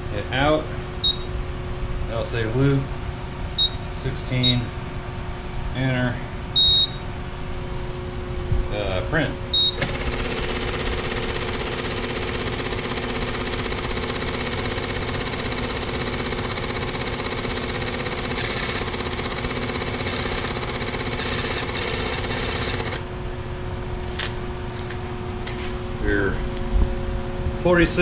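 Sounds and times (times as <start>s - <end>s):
ticket printer printing: 9.7s - 23.0s.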